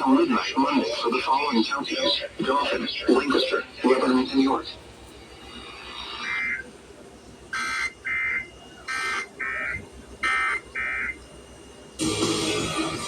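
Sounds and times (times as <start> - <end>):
buzzing warbling data squawks: 0.5 - 4.8, 5.4 - 6.8, 7.5 - 11.2
music: 12.0 - 13.0.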